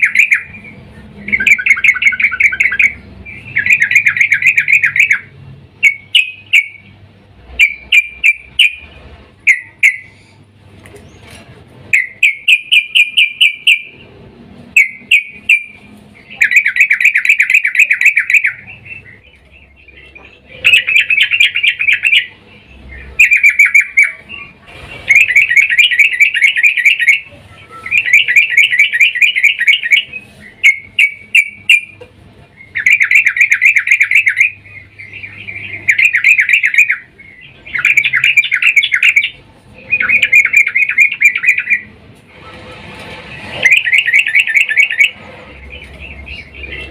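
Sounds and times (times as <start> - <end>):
bird calling in chattering trills: 0.0 - 14.2, 14.8 - 42.0, 43.3 - 46.9.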